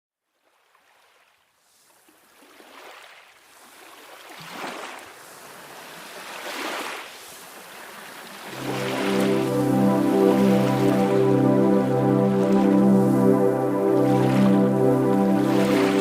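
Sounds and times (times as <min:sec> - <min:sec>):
sea waves washing in: 0:03.5 - 0:16.0.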